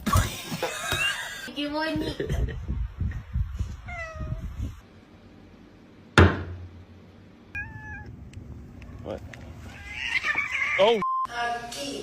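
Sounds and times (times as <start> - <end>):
cat meowing: 7.6 - 8.2, 8.9 - 11.0.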